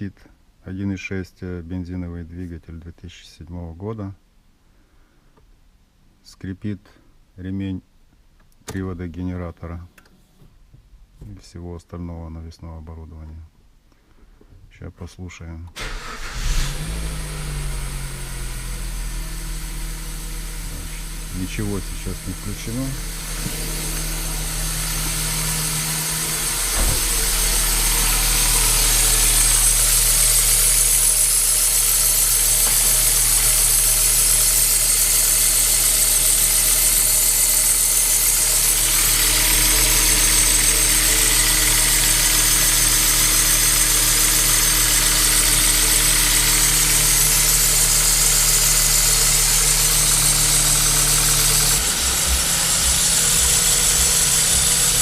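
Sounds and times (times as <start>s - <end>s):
car engine idling: 15.8s - 55.0s
drive belt squealing: 18.8s - 55.0s.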